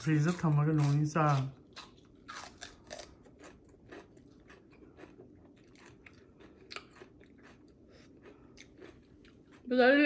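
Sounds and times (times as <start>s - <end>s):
person chewing food: 0.0s - 9.7s.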